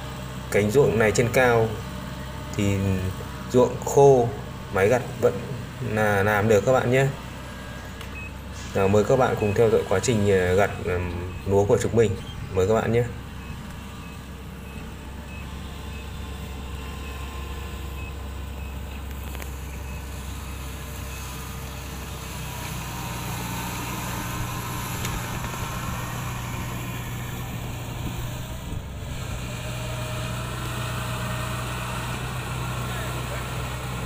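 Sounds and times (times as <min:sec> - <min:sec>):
combine harvester diesel engine: 0:00.0 - 0:34.0
warning beeps: 0:08.1 - 0:10.0, 0:10.6 - 0:21.3.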